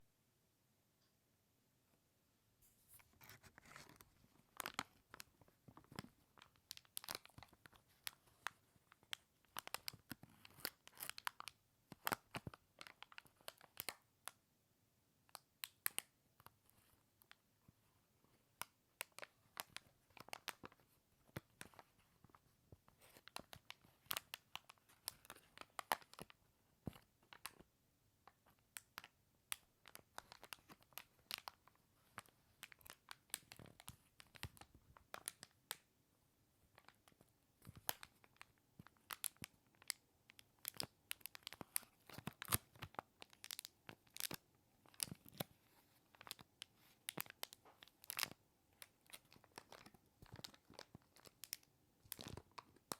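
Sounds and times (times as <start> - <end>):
plastic bag crinkling: 36.8 - 52.9.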